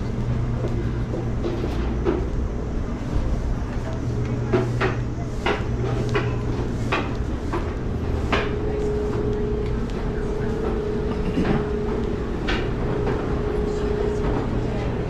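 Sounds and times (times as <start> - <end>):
light-rail train rumble: 0.0 - 15.0
sharp clanks and knocks: 4.5 - 9.3.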